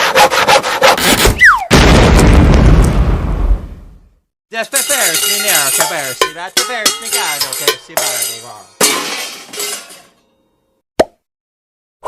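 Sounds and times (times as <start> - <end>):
glass breaking crash: 4.7 - 10.2.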